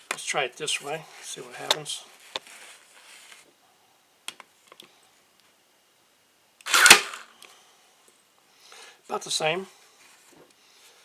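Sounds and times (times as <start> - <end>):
staple gun snap: 6.6 - 7.2.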